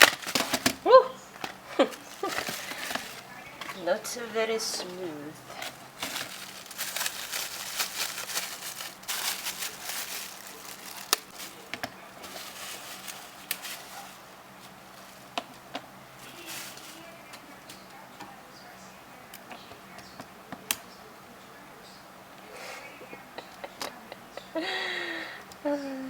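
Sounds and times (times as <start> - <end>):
plastic packaging crinkling: 0.0 - 17.8
faint steady hum: 0.0 - 26.0.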